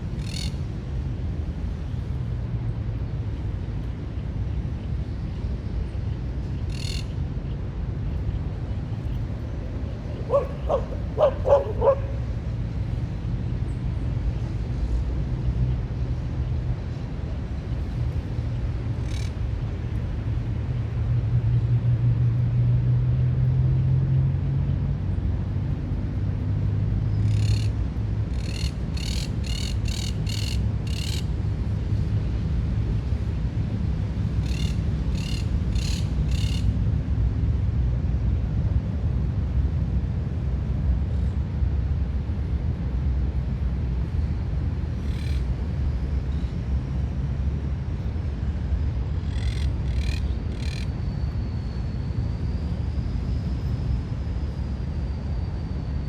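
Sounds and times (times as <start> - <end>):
low rumble of city traffic: 0.0 - 56.0
bird sharp high calls: 10.1 - 12.2, 34.4 - 36.7, 49.2 - 50.9
dog barking: 10.3 - 12.2.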